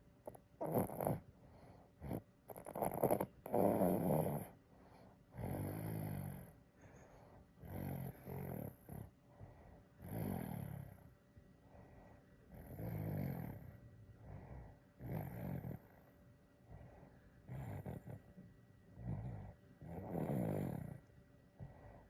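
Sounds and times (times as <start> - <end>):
baby snoring: 0.3 - 1.2, 2.0 - 4.6, 5.4 - 6.6, 7.6 - 9.1, 10.0 - 11.0, 12.5 - 13.8, 15.0 - 16.1, 17.5 - 18.3, 19.0 - 21.1.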